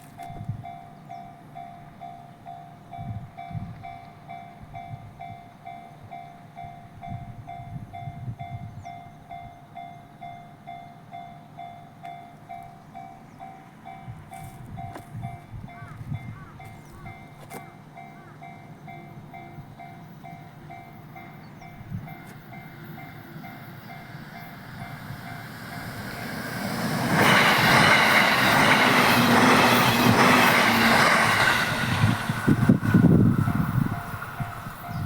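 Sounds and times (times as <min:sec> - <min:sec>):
electric train rumble: 0:00.0 - 0:35.0
wheels clacking over rail joints: 0:23.8 - 0:35.0.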